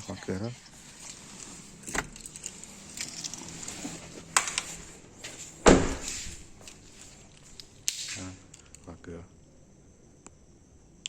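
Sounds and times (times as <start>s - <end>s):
car door shutting thud: 5.6s - 6.2s.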